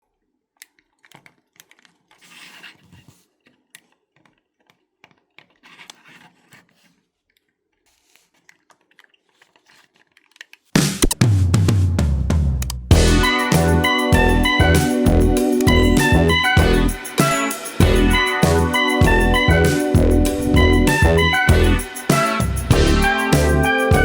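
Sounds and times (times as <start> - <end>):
loud music with drum beat: 10.8 - 24.0.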